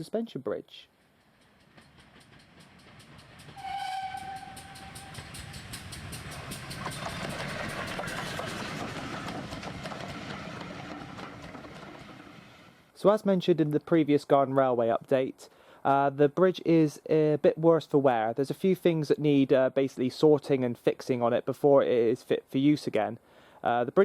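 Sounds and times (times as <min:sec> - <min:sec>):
rhythmic clatter of running train: 0:01.0 - 0:12.9
train whistle: 0:03.5 - 0:05.6.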